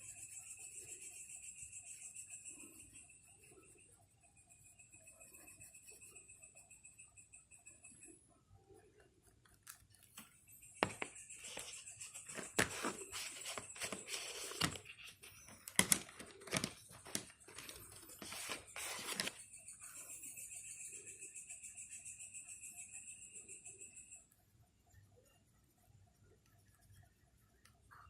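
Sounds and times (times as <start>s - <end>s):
paper crinkling and crumpling: 10.8s - 19.4s.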